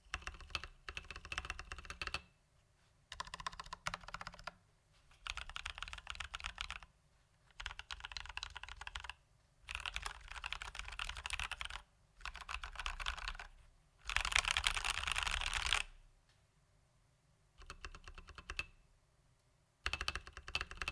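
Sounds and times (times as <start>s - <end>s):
typing on mechanical keyboard: 0.0s - 2.3s, 3.1s - 4.6s, 5.2s - 6.9s, 7.5s - 15.9s, 17.6s - 18.7s, 19.8s - 20.9s.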